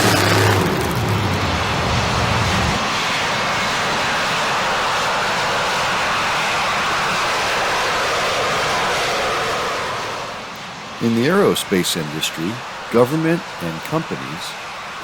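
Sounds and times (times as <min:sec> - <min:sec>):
deep engine rumble: 0:00.0 - 0:02.9
aircraft engine roar: 0:00.0 - 0:15.0.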